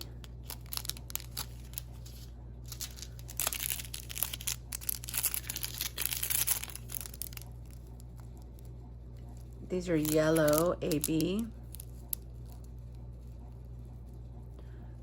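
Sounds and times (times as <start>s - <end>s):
plastic bags crinkling: 0.0s - 8.2s, 9.4s - 12.7s
rhinestones clicking: 9.2s - 13.5s.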